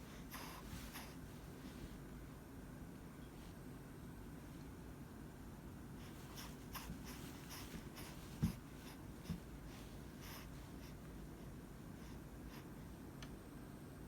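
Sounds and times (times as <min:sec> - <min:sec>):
baby breathing and snuffling: 0:00.0 - 0:01.3, 0:06.0 - 0:11.1
soft thumps: 0:06.4 - 0:09.7.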